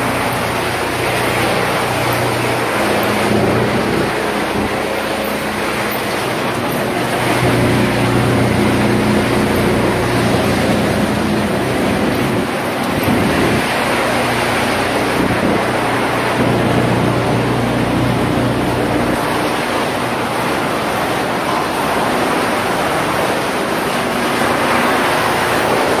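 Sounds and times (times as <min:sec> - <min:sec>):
wood chipper running: 0:00.0 - 0:26.0.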